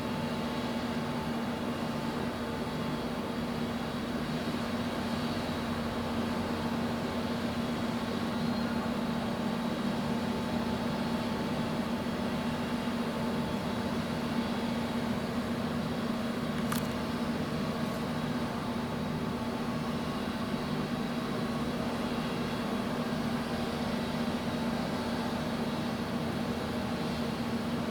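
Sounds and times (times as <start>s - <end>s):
ship engine drone: 0.0s - 27.9s.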